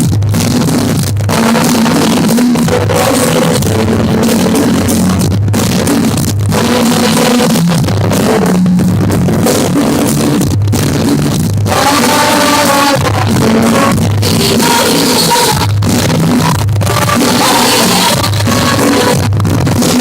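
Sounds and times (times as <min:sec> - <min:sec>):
person singing: 0:01.3 - 0:05.9, 0:11.7 - 0:20.0.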